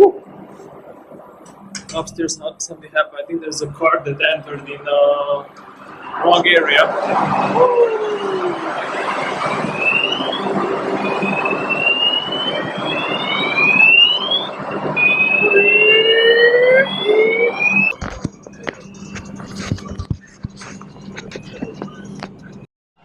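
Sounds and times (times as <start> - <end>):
steady low hum: 0.0 - 22.7
fire alarm rising tones: 5.4 - 20.1.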